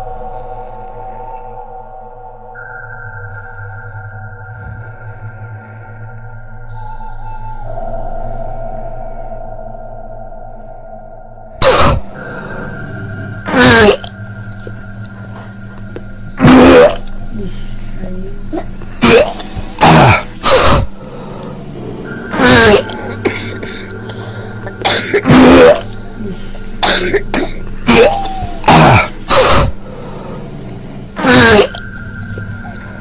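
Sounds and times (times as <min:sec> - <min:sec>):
low hum: 0:00.0 - 0:33.0
person coughing: 0:11.6 - 0:14.2, 0:18.5 - 0:29.8.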